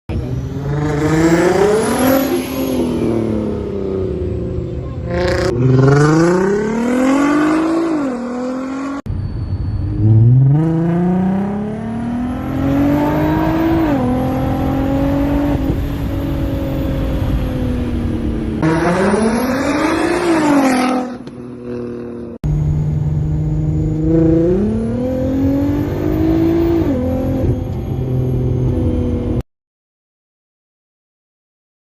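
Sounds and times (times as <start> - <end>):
supercharger whine: 0.1 - 29.4
car engine accelerating hard: 9.9 - 29.4.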